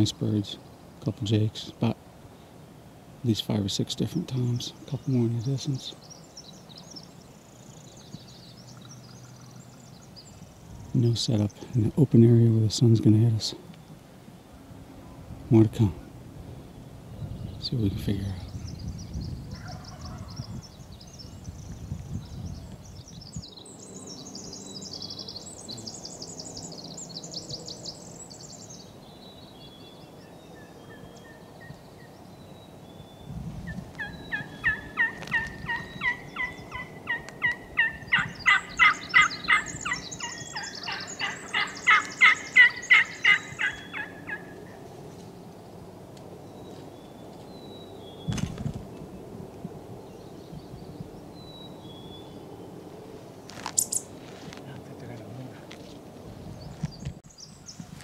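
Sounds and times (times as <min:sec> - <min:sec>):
small birds chirping: 0:00.0 - 0:14.4, 0:15.0 - 0:44.9, 0:45.5 - 0:58.0
turkeys gobbling: 0:34.0 - 0:44.9.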